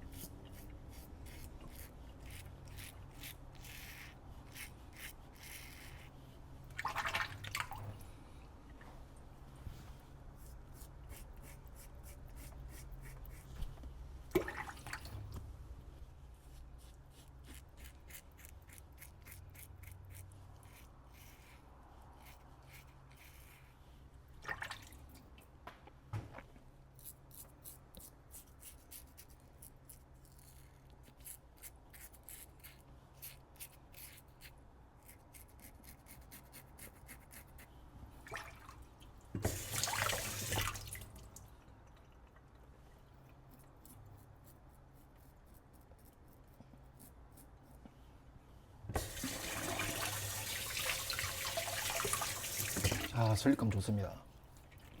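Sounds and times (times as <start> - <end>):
razor scraping stubble: 0.0 - 6.1, 16.6 - 23.6, 27.0 - 37.7
tap water running: 39.4 - 41.4, 48.9 - 53.3.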